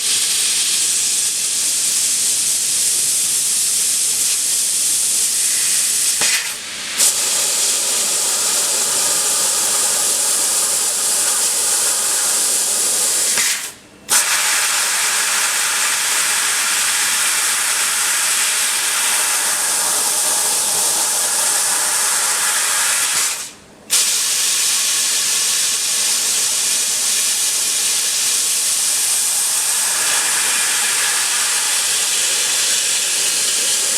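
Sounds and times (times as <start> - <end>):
laser cutter gas hiss: 0.0 - 33.9.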